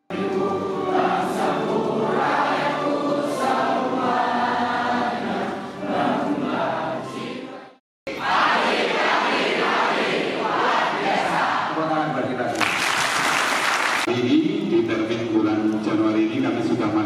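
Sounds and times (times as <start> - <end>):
choir singing: 0.0 - 12.2.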